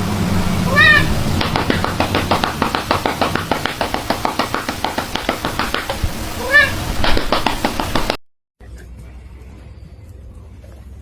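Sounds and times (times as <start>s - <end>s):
cat meow: 0.7s - 1.2s, 6.4s - 6.9s
rapid light tapping: 1.4s - 6.3s, 7.0s - 8.2s.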